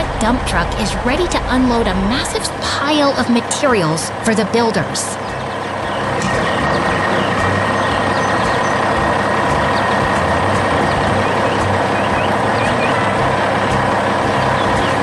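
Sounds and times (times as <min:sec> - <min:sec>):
dump truck engine running: 0:00.0 - 0:15.0.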